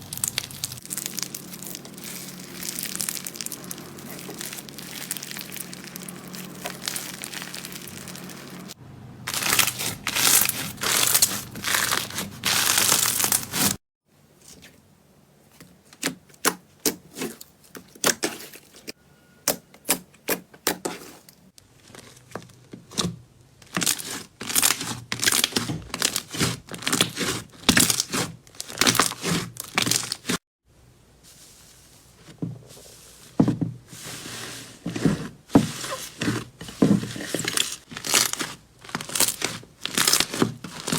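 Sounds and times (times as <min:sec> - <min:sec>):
slime crackling and popping: 0:00.0 - 0:13.8, 0:37.5 - 0:40.9.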